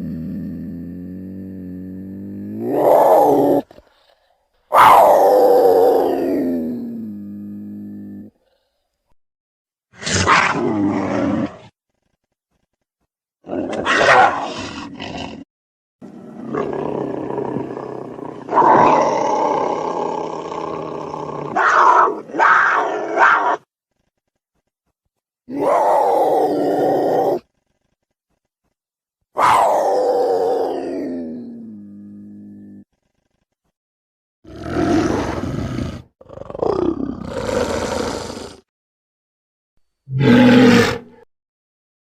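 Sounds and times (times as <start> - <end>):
dinosaur screeches and roars: 34.5 - 36.1.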